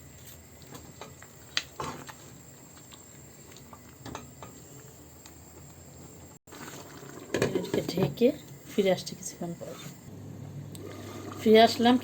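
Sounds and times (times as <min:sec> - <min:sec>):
meat frying: 0:00.0 - 0:09.0.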